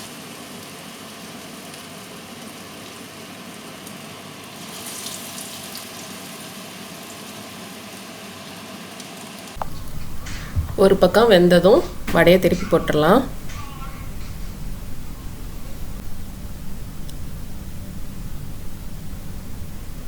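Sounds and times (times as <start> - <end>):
fritters sizzling in hot oil: 0.1 - 9.8.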